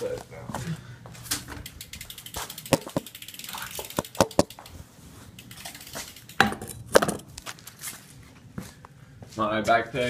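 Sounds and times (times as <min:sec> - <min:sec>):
bike frame knocks and clicks: 0:01.2 - 0:04.8, 0:05.4 - 0:07.9.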